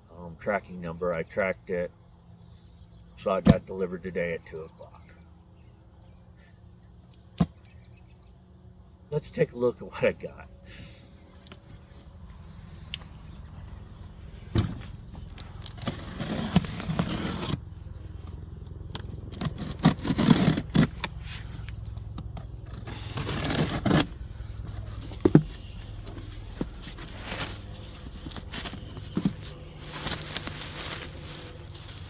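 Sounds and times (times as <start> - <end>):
cardboard box scraping and rustling: 14.2 - 17.7, 19.2 - 21.8, 22.6 - 32.0.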